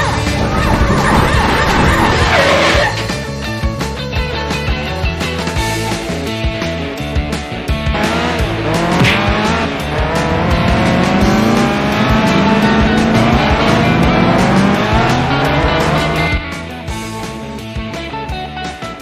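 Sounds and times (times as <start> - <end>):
rock music: 0.0 - 19.0
tyre squeal: 0.6 - 3.1
race car engine revving: 7.9 - 16.6.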